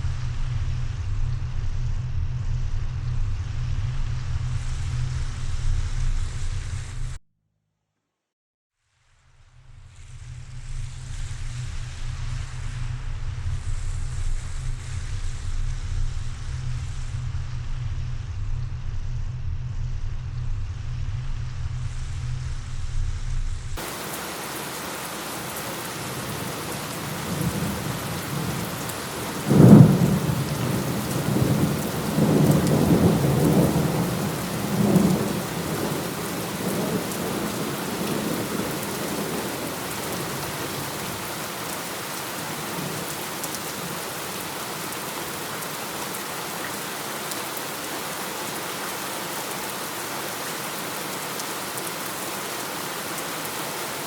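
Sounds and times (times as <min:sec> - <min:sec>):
low rumble: 0:00.0 - 0:07.2, 0:09.4 - 0:23.8
heavy rain hissing: 0:23.8 - 0:54.0
rolling thunder: 0:25.2 - 0:41.3
thunderclap: 0:25.6 - 0:41.1.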